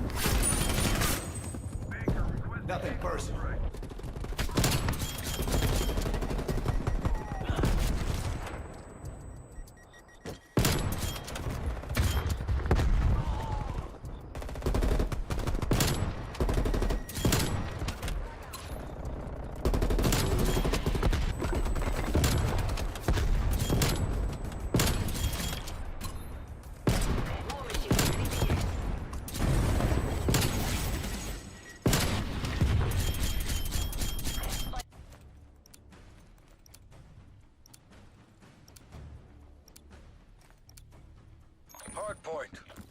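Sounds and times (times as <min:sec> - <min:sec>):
video game automatic gunfire: 0:03.7 - 0:08.4, 0:13.5 - 0:18.1, 0:19.0 - 0:25.2.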